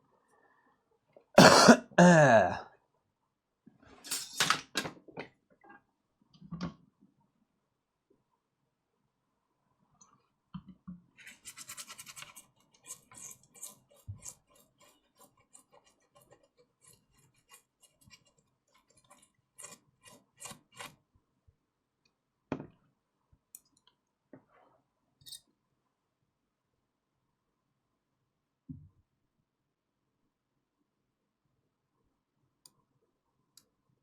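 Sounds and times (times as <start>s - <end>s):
brush scrubbing circuit board: 11.2s - 21.0s.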